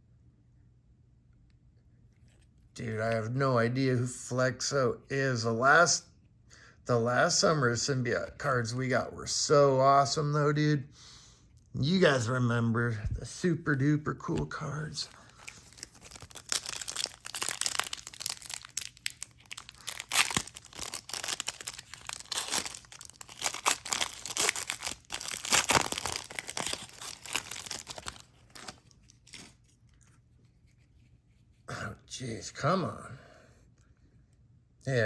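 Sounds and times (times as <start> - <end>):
card pack wrapper crinkling: 14.2 - 30.8.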